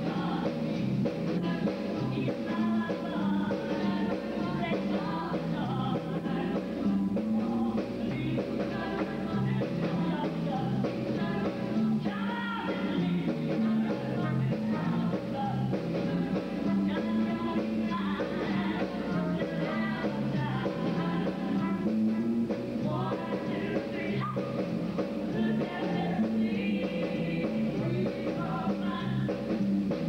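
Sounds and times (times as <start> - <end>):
band with walking bass: 0.0 - 30.0
choir singing in close harmony: 23.0 - 24.2, 25.3 - 28.8.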